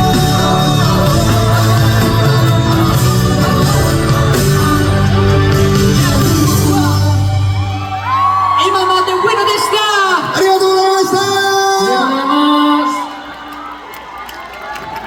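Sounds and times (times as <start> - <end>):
live pop-rock instrumental: 0.0 - 8.6.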